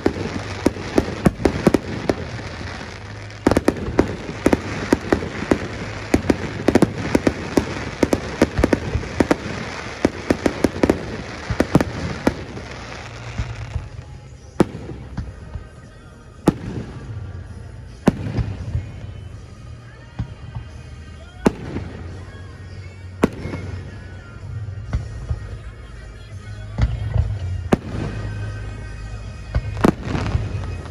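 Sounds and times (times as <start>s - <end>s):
loud firework booms: 0.0s - 14.0s, 14.6s - 15.7s, 18.1s - 19.1s, 21.4s - 22.3s, 23.2s - 24.1s
fireworks bangs and crackles: 0.0s - 30.9s.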